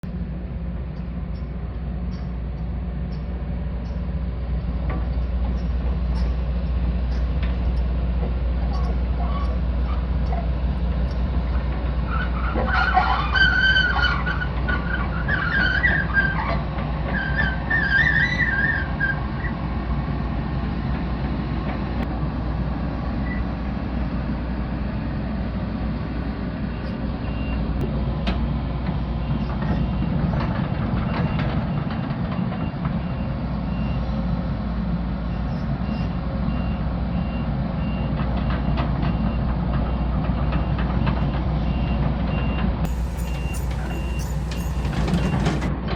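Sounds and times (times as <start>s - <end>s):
excavator diesel engine running: 0.0s - 45.9s
travel alarm beeping: 42.4s - 45.7s
high squeals: 42.9s - 45.7s
knocks and scrapes: 42.9s - 45.7s.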